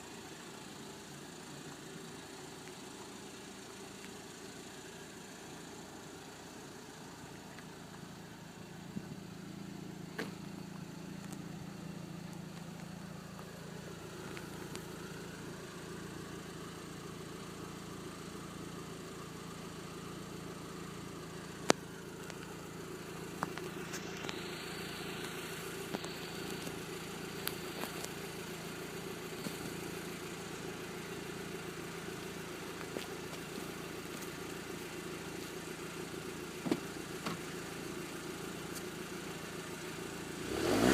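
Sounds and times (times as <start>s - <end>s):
car engine idling: 0.0s - 40.9s.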